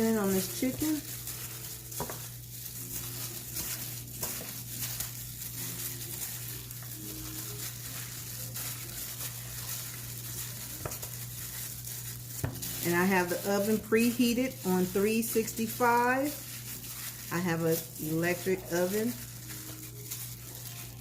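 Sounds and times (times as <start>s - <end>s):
hand squishing wet chicken: 0.4s - 21.0s.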